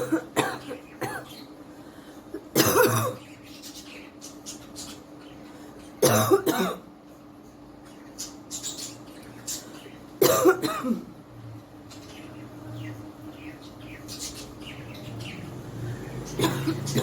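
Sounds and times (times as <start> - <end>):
woman coughing: 0.0 - 1.3, 2.5 - 3.2, 6.0 - 6.9, 10.2 - 11.1, 16.4 - 17.0.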